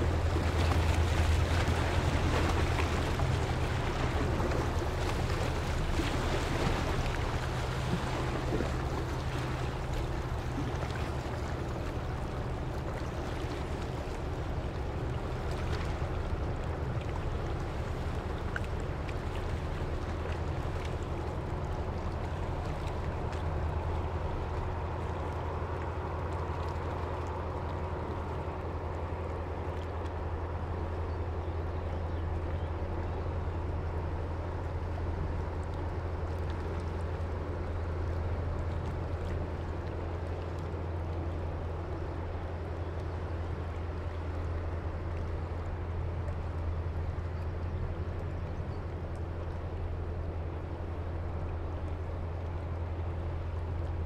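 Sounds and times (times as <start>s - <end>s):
ship engine drone: 0.0s - 54.0s
water sounds: 0.0s - 54.0s.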